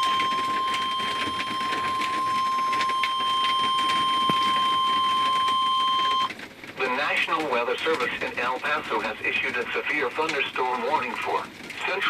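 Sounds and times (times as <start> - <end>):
steady warning alarm beep: 0.0 - 6.3
crackly radio hiss: 0.0 - 12.0.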